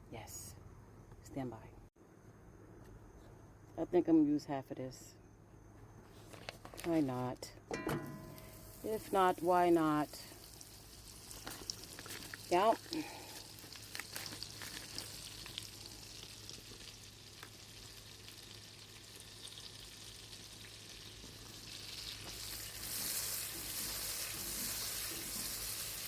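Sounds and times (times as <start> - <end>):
butter sizzling in a pot: 8.0 - 26.0.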